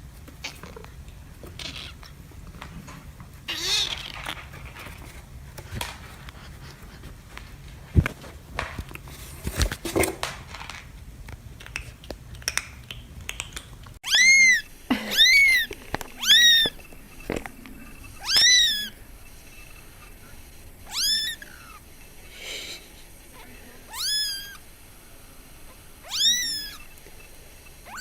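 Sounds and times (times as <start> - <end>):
cat meowing: 3.5 - 4.3, 14.0 - 16.8, 18.2 - 19.0, 20.8 - 21.8, 23.9 - 24.6, 26.0 - 26.9.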